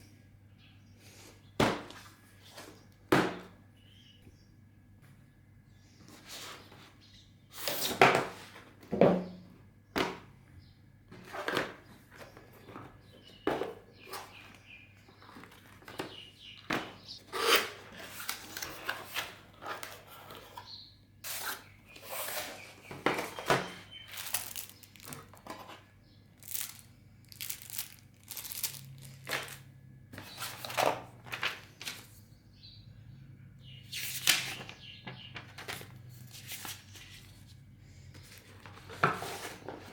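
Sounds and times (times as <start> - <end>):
wrapping crinkling and tearing: 24.1 - 25.4, 26.4 - 29.7.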